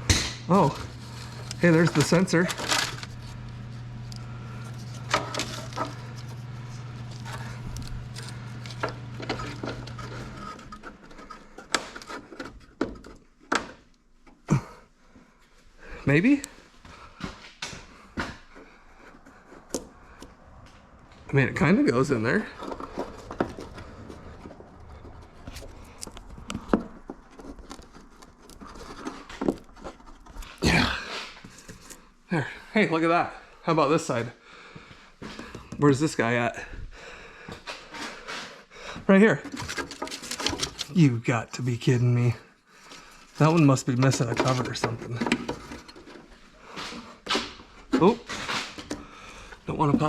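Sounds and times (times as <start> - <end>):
steady low hum: 0.0 - 50.0
hands rubbing plastic parts: 0.5 - 14.0, 22.1 - 32.2, 39.4 - 41.0, 42.8 - 49.1.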